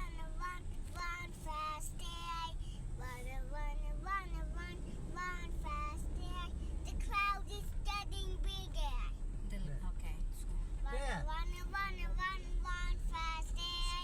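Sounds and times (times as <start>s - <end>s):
child singing: 0.0s - 9.1s, 11.2s - 14.0s.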